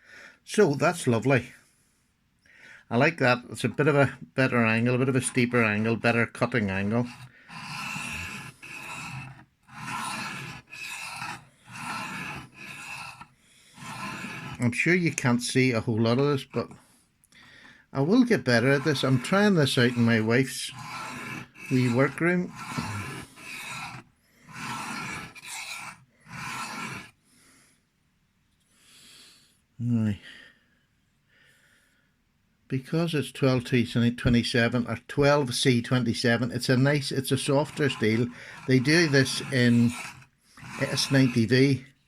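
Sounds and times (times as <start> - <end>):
knife scraping on sharpening stone: 6.6 - 14.6, 18.4 - 27.1, 36.6 - 41.6.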